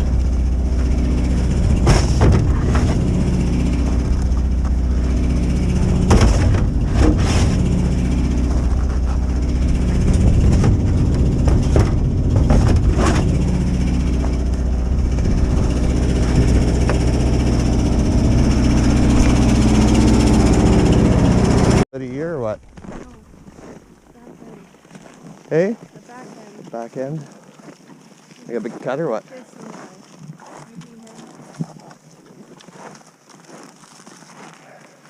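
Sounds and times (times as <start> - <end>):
engine running: 0.0 - 24.8
short knocks or clanks: 1.6 - 3.2, 5.8 - 7.8, 8.5 - 17.6.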